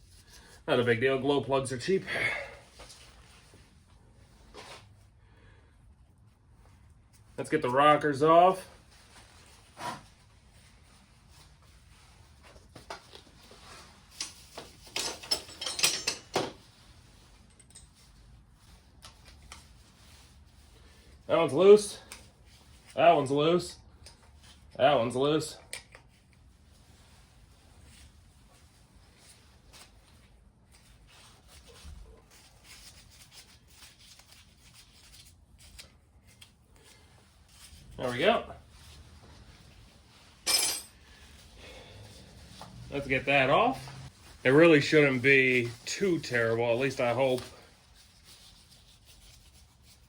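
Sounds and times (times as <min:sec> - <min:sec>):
hand tools clicking and scraping metal: 0:14.1 - 0:16.6.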